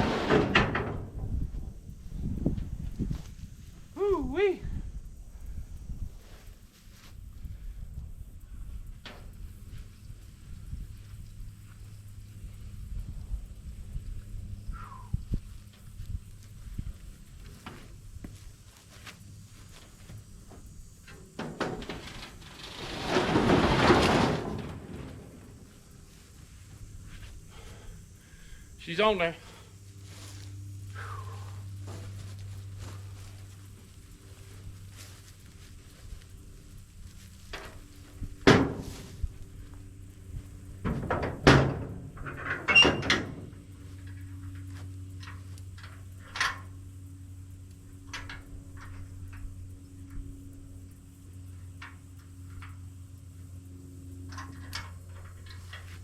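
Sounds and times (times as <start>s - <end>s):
scrap metal scraping: 0.0s - 1.1s, 21.4s - 25.7s.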